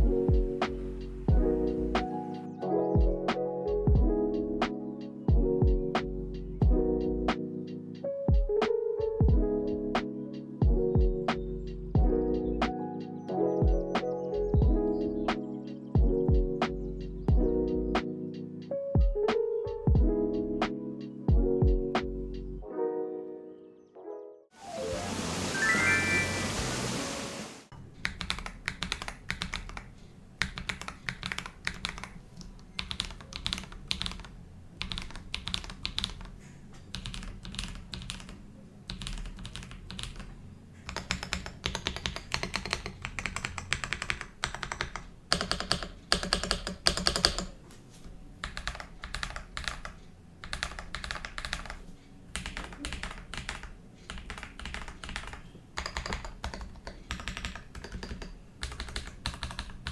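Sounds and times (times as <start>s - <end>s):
mechanical keyboard typing: 28.0s - 47.6s, 48.4s - 59.9s.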